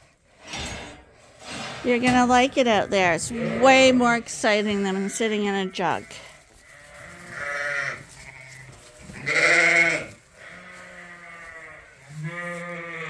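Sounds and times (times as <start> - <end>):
sheep bleating: 2.8 - 13.0.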